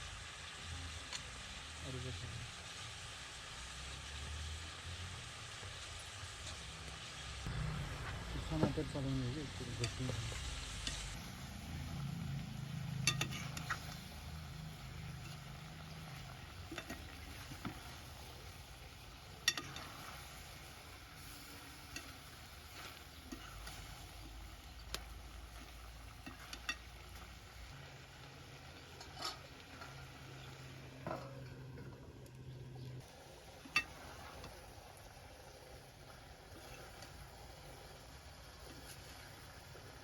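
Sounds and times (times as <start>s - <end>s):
curry sizzling in a pot: 0.0s - 40.0s.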